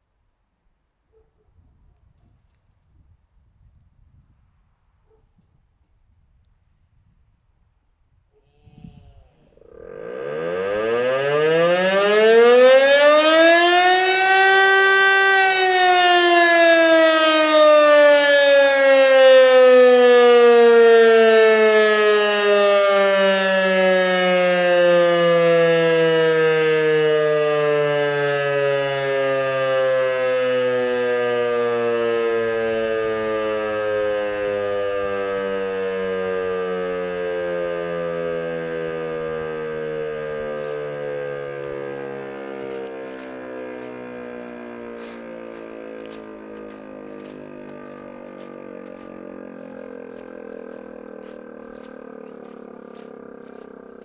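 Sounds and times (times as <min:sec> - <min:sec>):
civil defence siren wailing: 0:09.6 - 0:54.0.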